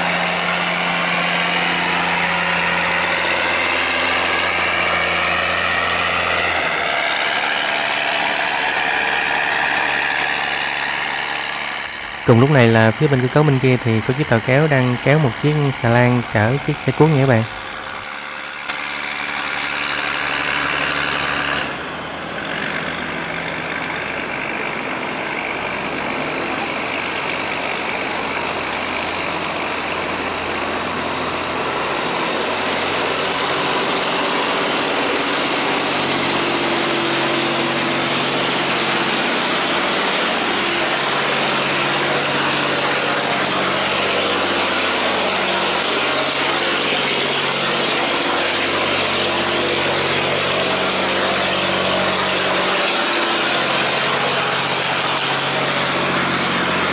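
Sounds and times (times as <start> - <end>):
tugboat engine running: 0.0 - 56.9
high whine falling in pitch: 1.8 - 17.6.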